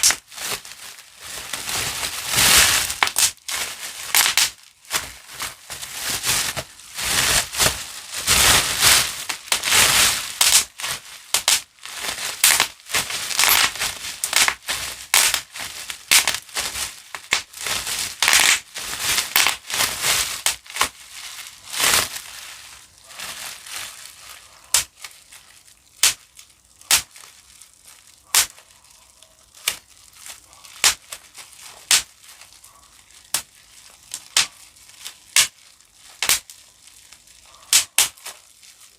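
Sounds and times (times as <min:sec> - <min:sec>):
bubble wrap crinkling: 0:00.0 - 0:38.9
bubble wrap popping: 0:00.0 - 0:38.9.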